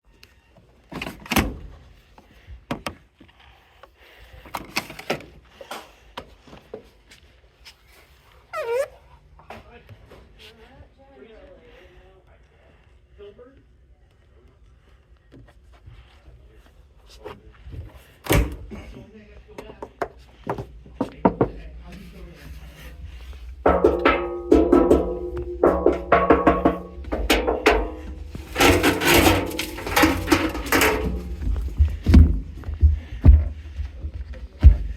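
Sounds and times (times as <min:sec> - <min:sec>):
heavy thud: 0:23.6 - 0:34.0
knocks and clunks of handling: 0:23.6 - 0:34.9
percussive struck notes music: 0:23.7 - 0:27.9.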